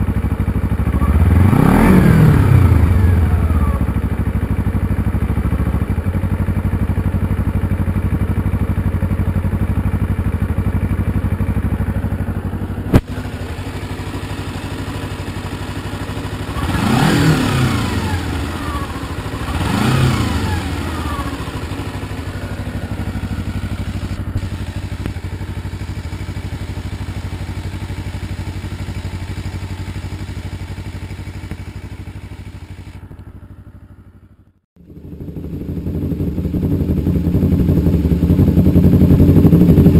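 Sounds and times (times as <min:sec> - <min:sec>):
motorcycle engine idling: 0:00.0 - 0:39.9
motorcycle throttle blips: 0:00.1 - 0:39.9
sharp click: 0:12.9 - 0:13.2.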